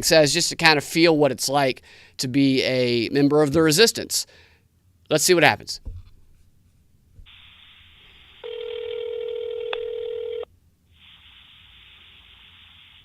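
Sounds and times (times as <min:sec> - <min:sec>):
telephone ringback tone: 0:08.4 - 0:10.5
phone line hiss: 0:08.4 - 0:13.0.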